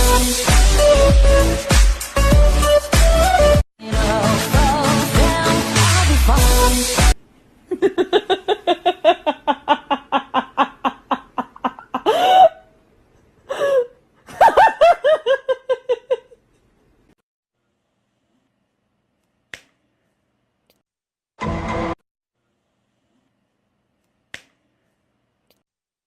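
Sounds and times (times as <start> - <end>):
background music: 0.0 - 7.2
hearty laughter: 7.7 - 12.5, 14.2 - 16.4.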